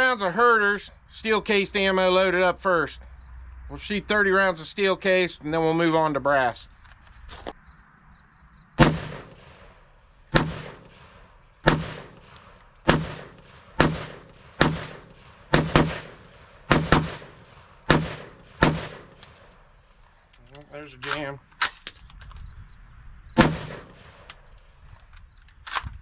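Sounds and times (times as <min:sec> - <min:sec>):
rifle shots with echo: 0:08.8 - 0:20.2, 0:23.4 - 0:24.7.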